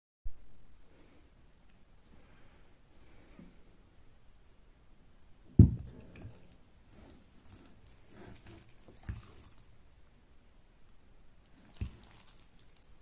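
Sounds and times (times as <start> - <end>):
wet noodle eating sounds: 6.0 - 9.8, 11.4 - 13.0.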